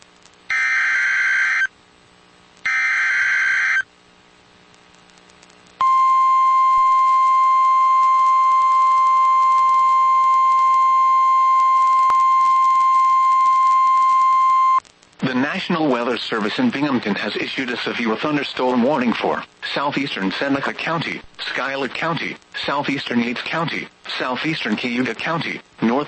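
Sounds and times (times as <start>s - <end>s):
steady warning alarm tone: 0.5s - 1.7s, 2.7s - 3.8s.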